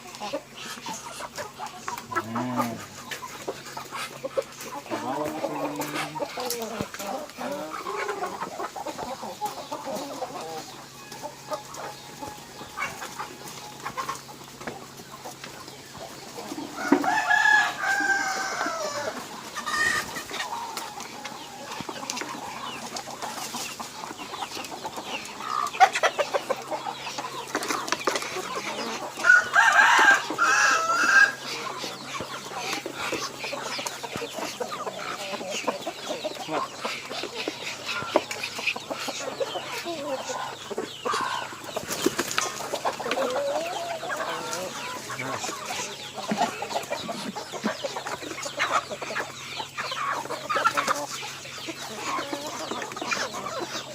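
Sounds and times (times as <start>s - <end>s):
chickens clucking: 0.0s - 53.9s
rooster crowing: 16.8s - 19.2s, 29.2s - 31.4s.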